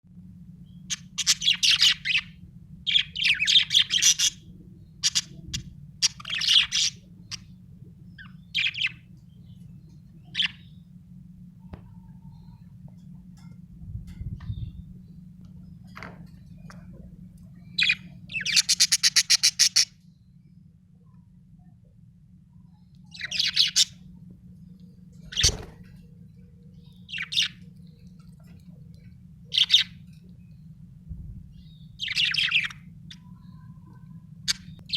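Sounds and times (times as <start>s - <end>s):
low steady hum: 0.1s - 34.9s
budgerigar chirping: 0.9s - 7.5s, 17.8s - 19.9s, 23.1s - 24.0s, 29.5s - 30.0s, 31.6s - 33.3s.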